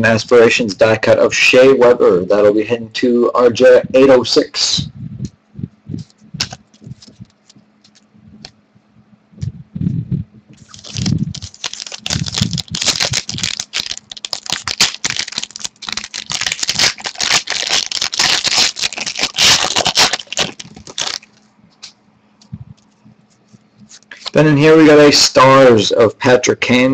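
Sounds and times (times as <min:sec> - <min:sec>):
wrapper crinkling: 0:10.6 - 0:21.4.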